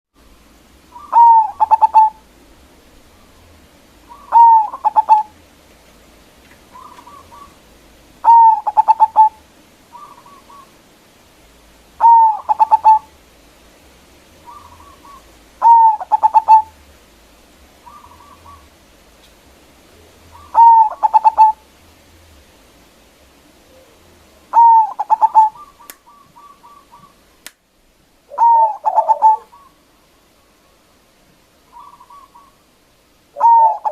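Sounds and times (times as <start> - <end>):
dove cooing: 0.9 - 2.2, 3.2 - 5.4, 6.7 - 7.6, 8.2 - 10.8, 12.0 - 13.2, 14.4 - 16.8, 17.8 - 18.8, 19.9 - 21.7, 23.5 - 27.2, 28.3 - 29.9, 31.7 - 32.7, 33.3 - 33.9.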